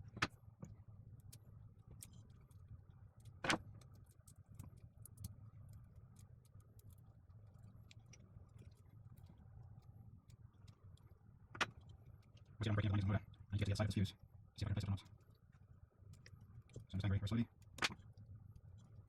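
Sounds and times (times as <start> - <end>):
steady low hum: 0.0 - 19.0
clicks and taps of small parts: 3.2 - 7.0, 11.5 - 12.5, 17.6 - 18.2.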